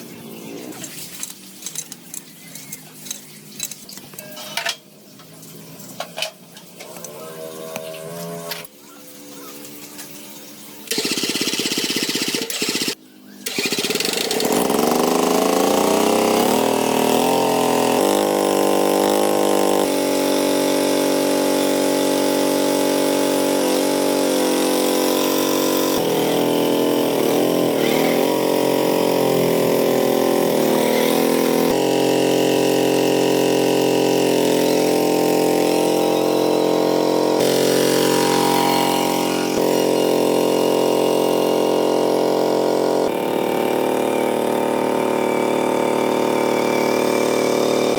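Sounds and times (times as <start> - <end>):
tractor engine cranking: 10.9 - 47.9
tractor engine running: 10.9 - 47.9.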